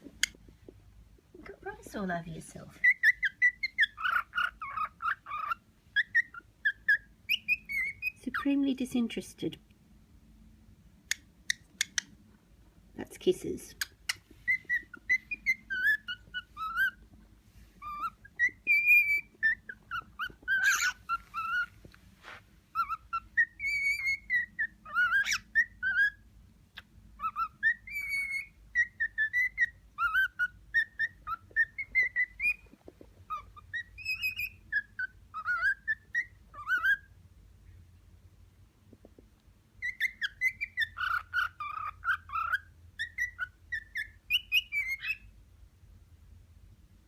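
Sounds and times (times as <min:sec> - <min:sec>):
cockatiel whistling song: 0:02.8 - 0:08.2, 0:13.8 - 0:17.0, 0:17.8 - 0:21.8, 0:22.7 - 0:26.2, 0:26.8 - 0:37.2, 0:39.8 - 0:45.3.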